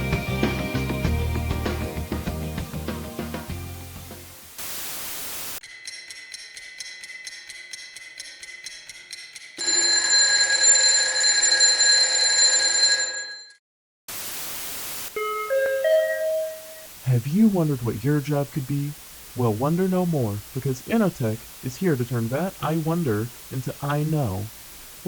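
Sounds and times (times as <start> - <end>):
background music: 0.0 - 4.4
radio static bursts: 16.9 - 25.0.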